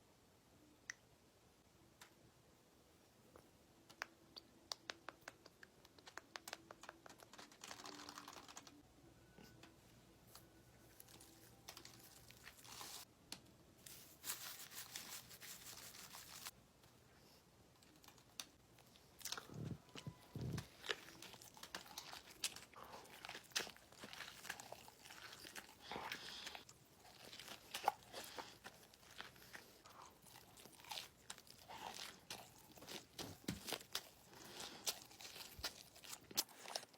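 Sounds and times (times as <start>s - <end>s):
food wrapper rustling and tearing: 6.9s - 8.8s, 10.9s - 13.1s, 13.8s - 16.5s, 20.6s - 36.9s.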